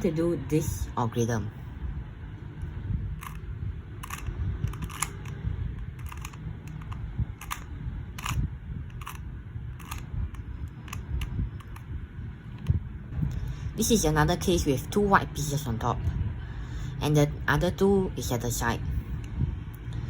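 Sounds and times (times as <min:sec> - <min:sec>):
puzzle cube layers clicking: 0:04.0 - 0:07.6, 0:08.2 - 0:09.2, 0:09.8 - 0:10.0.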